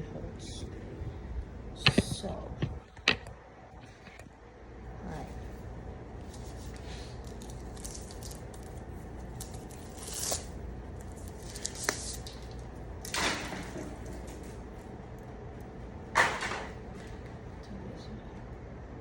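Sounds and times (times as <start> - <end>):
wire scraping in stripper: 6.2 - 14.7.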